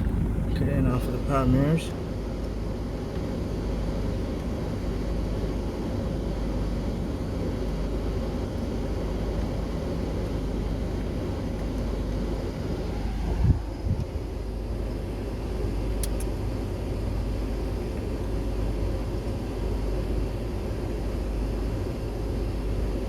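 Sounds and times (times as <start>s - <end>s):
vehicle rumble: 0.0s - 21.2s.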